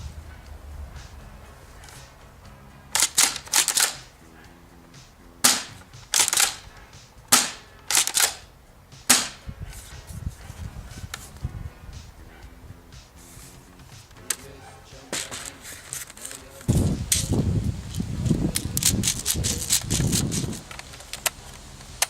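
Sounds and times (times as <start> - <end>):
airsoft shotgun firing and pumping: 3.0 - 4.1, 5.4 - 6.6, 7.3 - 8.4, 9.1 - 9.4, 18.6 - 22.0.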